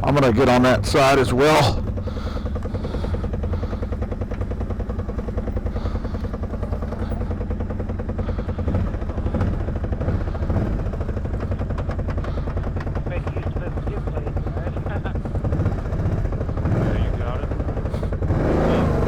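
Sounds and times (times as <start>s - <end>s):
atv engine running at low speed: 0.0s - 19.0s.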